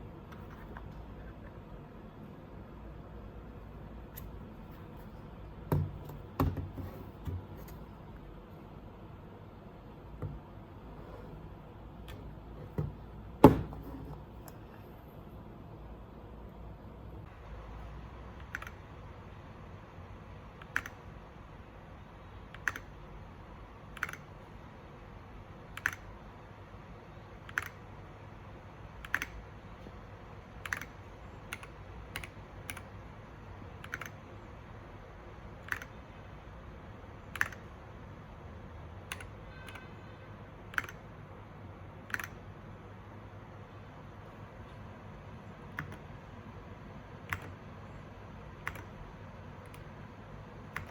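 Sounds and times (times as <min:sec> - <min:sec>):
mechanical keyboard keys clacking: 0:23.8 - 0:24.4, 0:25.7 - 0:26.2, 0:29.0 - 0:29.4, 0:30.6 - 0:33.0, 0:33.7 - 0:34.4, 0:35.6 - 0:36.2, 0:37.2 - 0:37.7, 0:39.0 - 0:39.9, 0:40.6 - 0:41.2, 0:42.0 - 0:42.4, 0:47.2 - 0:50.0, 0:50.6 - 0:50.9.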